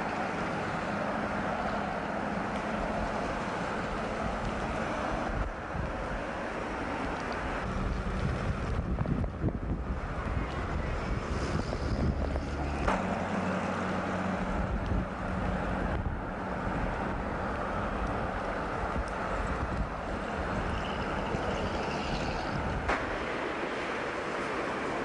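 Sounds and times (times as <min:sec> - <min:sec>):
vehicle engine and road noise: 0:00.0 - 0:25.0
wind on microphone: 0:02.8 - 0:13.0, 0:14.4 - 0:23.3.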